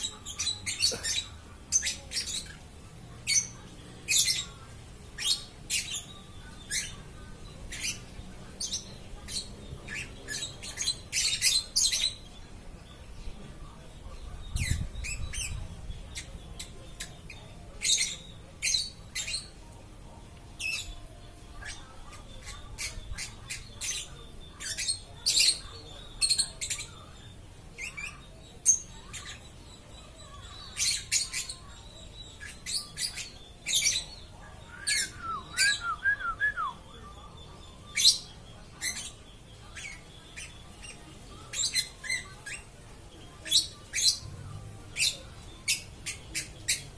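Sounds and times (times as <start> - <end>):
lovebird chirping and squawking: 0.0 - 12.3, 30.3 - 36.1, 37.6 - 42.8, 44.9 - 46.9.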